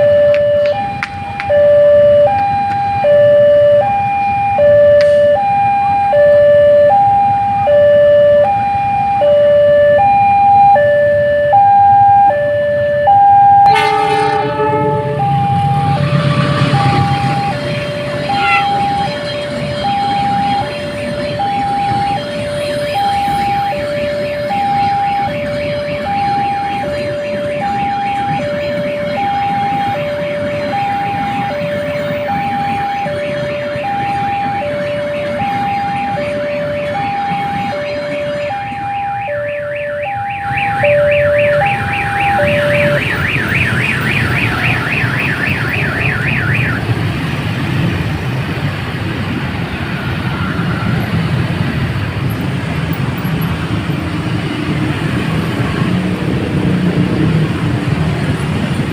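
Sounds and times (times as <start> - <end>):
level crossing alarm: 0.0 - 48.0
fast high warbling tone: 13.6 - 20.6
heavy vehicle rumble passing: 13.7 - 39.1, 46.8 - 58.9.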